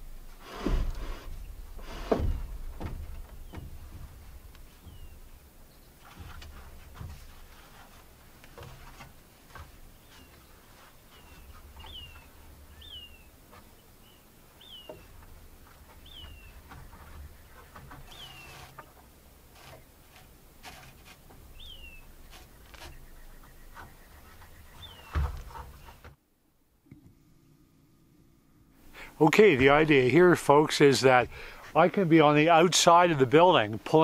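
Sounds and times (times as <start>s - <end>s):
bird calling: 3.3s - 6.7s, 10.0s - 18.9s, 21.5s - 26.2s.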